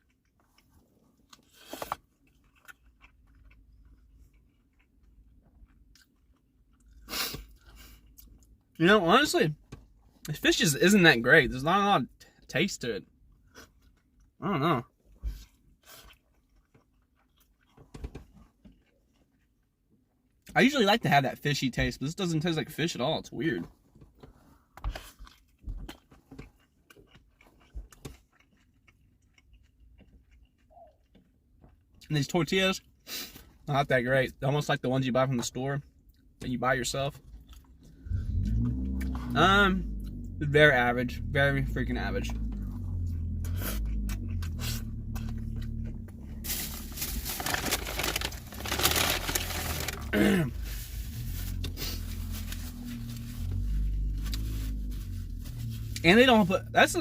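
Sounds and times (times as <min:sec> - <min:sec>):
close chewing: 0:00.0 - 0:08.7, 0:15.2 - 0:19.8, 0:24.3 - 0:32.1, 0:42.2 - 0:56.4
low steady hum: 0:35.9 - 0:57.0
paper wrapper crinkling and tearing: 0:46.2 - 0:56.4.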